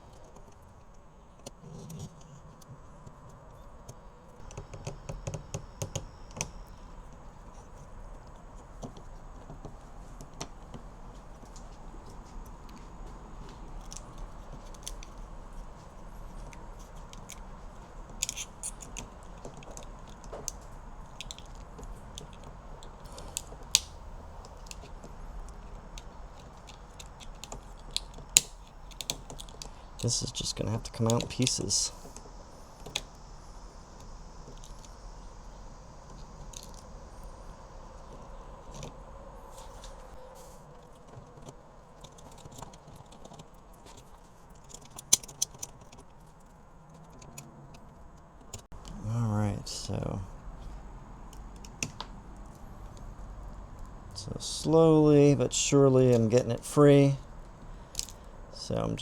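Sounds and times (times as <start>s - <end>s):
plastic cracking: 16.4s - 32.1s
sharp plastic snaps: 18.1s - 32.2s, 51.3s - 53.1s.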